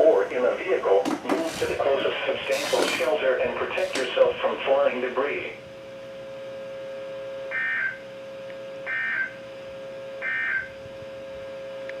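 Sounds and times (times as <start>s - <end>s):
warbling digital squawks: 7.5s - 8.0s, 10.2s - 10.7s.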